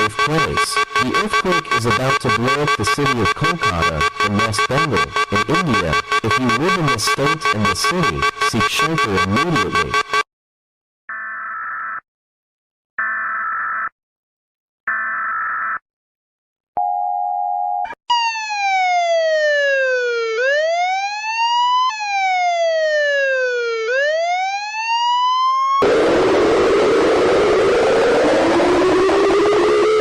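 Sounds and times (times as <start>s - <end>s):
chord-like alert beeps: 0.0s - 10.2s
steady alert tone: 0.0s - 10.2s
synthesized siren swooping: 0.0s - 10.2s, 18.1s - 30.0s.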